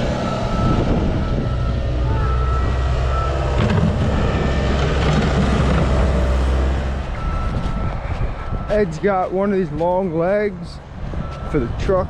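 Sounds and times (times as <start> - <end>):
diesel engine droning: 0.0 - 12.0
reversing alarm beeping: 0.2 - 3.7, 7.1 - 9.3, 11.2 - 11.7.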